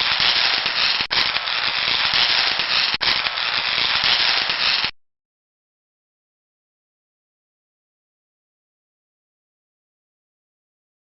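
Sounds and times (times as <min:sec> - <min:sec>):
crackling static hiss: 0:00.0 - 0:04.9.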